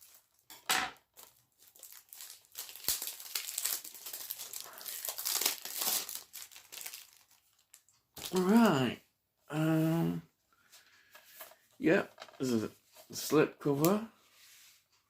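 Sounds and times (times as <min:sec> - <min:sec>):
shrink-wrap tearing and crinkling: 0:00.0 - 0:00.5, 0:01.1 - 0:08.8.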